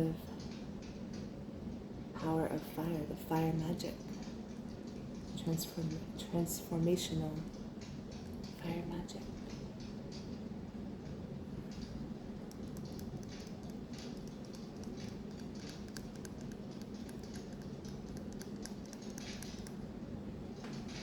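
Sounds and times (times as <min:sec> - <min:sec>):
steady low hum: 0:00.0 - 0:21.0
candle crackling: 0:11.9 - 0:19.8.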